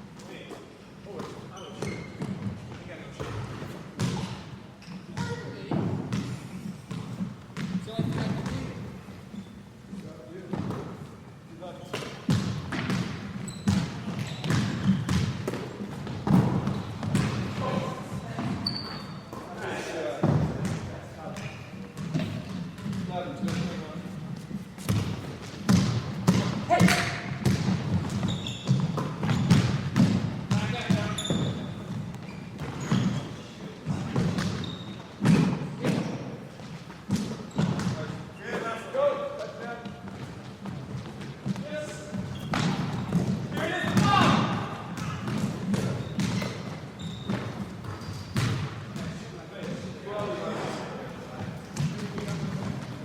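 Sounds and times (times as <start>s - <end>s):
basketballs bouncing on wooden floor: 1.1s - 9.4s, 11.9s - 19.4s, 20.2s - 23.9s, 24.8s - 38.2s, 39.8s - 50.3s, 51.5s - 53.0s.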